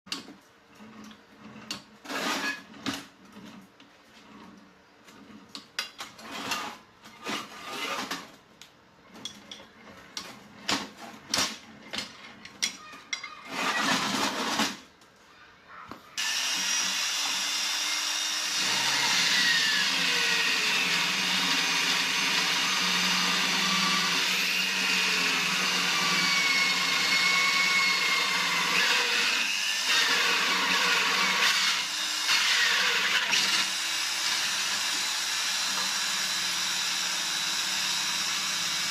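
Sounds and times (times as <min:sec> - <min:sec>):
small drill motor whirring: 0:16.2 - 0:38.9.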